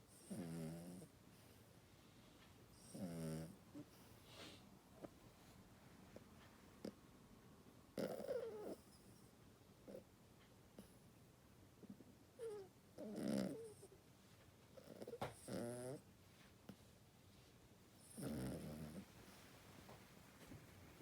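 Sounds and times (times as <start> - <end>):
dog snoring with croaks: 0.0 - 1.2, 2.7 - 4.1, 7.9 - 10.1, 11.8 - 14.0, 14.7 - 16.1, 18.0 - 19.4.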